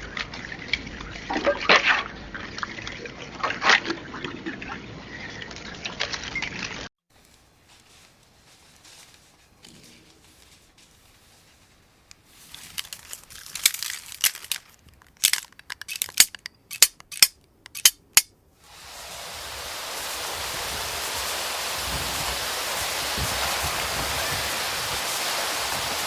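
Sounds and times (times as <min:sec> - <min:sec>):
steady rushing hiss: 0:07.1 - 0:26.0
sharp clicks and crackles: 0:12.1 - 0:18.3.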